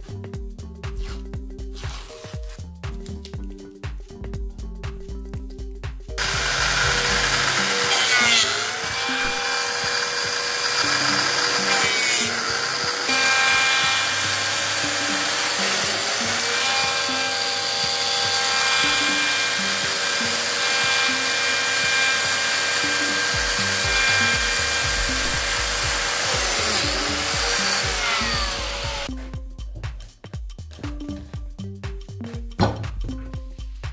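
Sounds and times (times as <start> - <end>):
background music with bass line: 0.0 - 10.0, 21.9 - 33.9
power tool running: 6.2 - 29.1.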